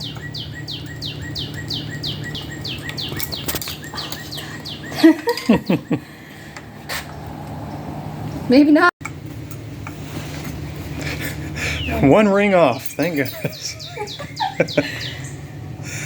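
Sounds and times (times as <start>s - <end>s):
bird chirping: 0.0s - 6.2s, 11.6s - 15.7s.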